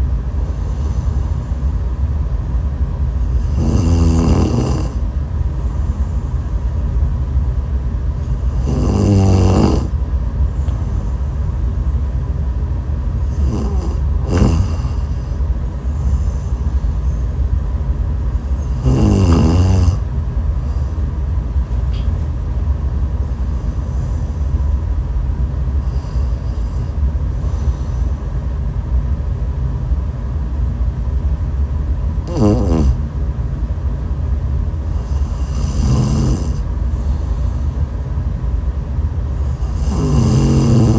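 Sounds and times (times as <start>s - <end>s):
steady low rumble: 0.0s - 40.9s
woman snoring: 3.3s - 5.1s, 8.3s - 10.0s, 13.2s - 15.3s, 18.6s - 20.0s, 32.2s - 33.0s, 35.0s - 37.4s, 39.5s - 40.9s.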